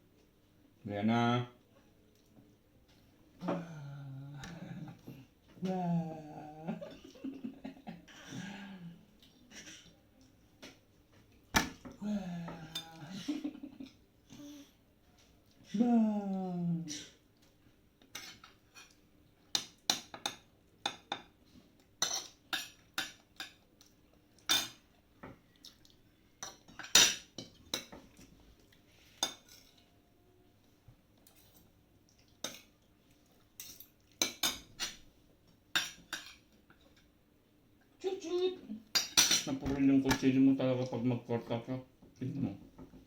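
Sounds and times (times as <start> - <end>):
cutlery clinking on plates: 18.1 - 21.4, 22.0 - 23.6, 24.4 - 24.8, 26.4 - 28.3, 29.2 - 29.8, 35.7 - 36.4, 38.9 - 40.3.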